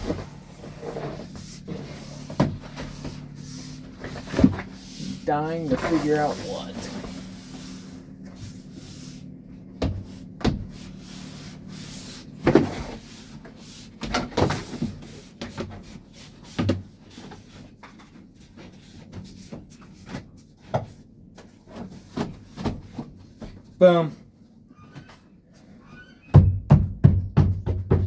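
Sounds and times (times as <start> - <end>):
rubber door seal thumps and knocks: 26.3 - 28.0.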